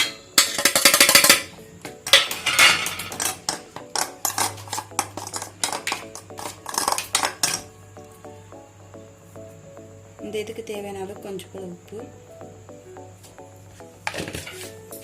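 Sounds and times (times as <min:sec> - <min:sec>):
metal spoon scraping a bowl: 0:02.1 - 0:07.7.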